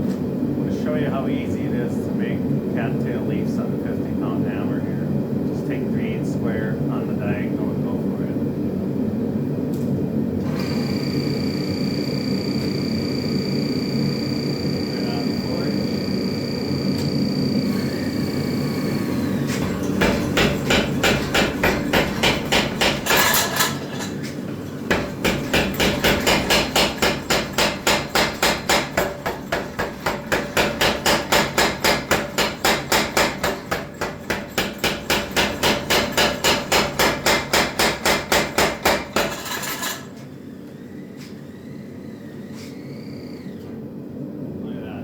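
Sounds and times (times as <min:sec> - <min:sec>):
power hammer striking hot steel: 0:19.0 - 0:40.2.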